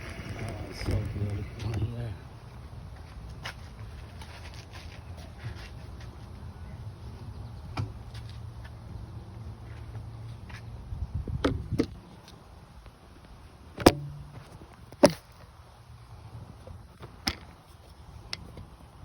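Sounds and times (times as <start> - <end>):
low steady hum: 13.4 - 19.0.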